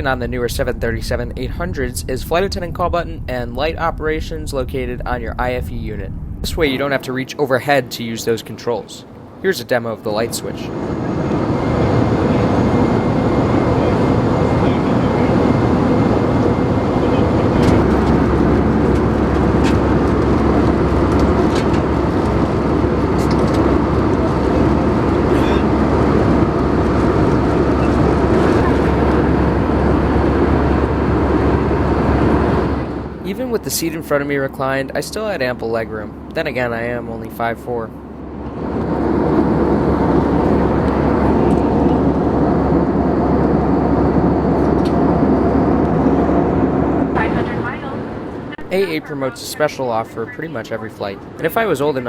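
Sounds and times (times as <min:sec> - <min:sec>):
airplane cabin drone: 0:00.0 - 0:52.0.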